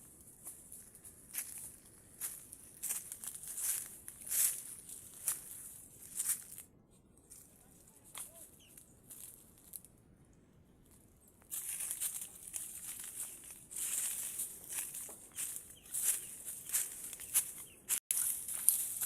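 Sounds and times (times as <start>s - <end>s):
rustling and crinkling: 0.1s - 9.9s, 10.8s - 19.0s.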